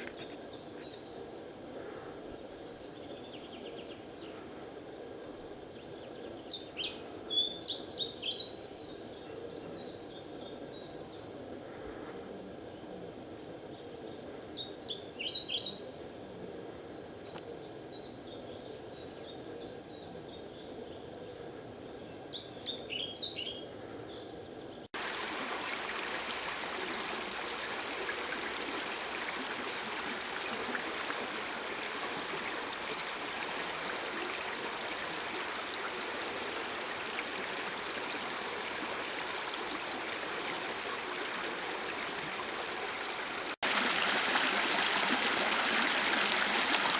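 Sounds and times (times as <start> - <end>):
songbird singing: 5.7 - 11.4
floodwater rushing: 25.0 - 46.9.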